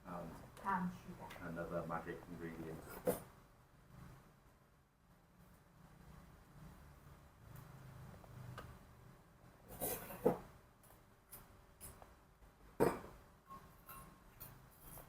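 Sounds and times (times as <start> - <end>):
utensils clinking against dishes: 12.8 - 15.0.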